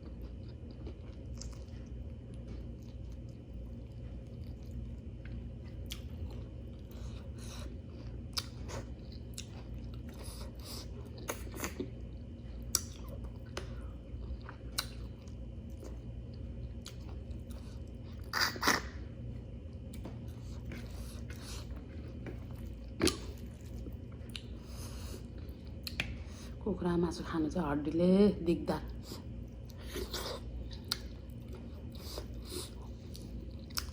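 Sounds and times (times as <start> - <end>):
close chewing food: 0.0 - 18.8, 19.8 - 26.2, 28.9 - 33.9
wet mouth clicks and smacks: 25.8 - 26.2.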